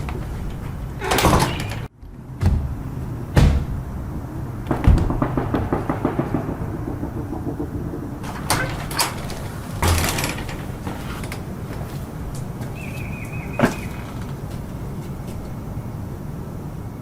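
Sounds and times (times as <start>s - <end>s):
knocks and thumps: 0.0s - 3.9s, 4.6s - 12.8s.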